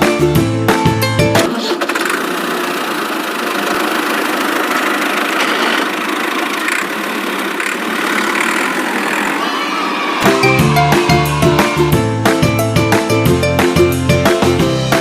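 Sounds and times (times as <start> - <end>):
toy car running: 1.4 - 10.2.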